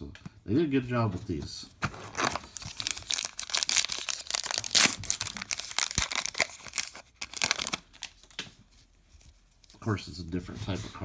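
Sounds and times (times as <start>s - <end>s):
wrapper tearing and crinkling: 2.0s - 8.4s.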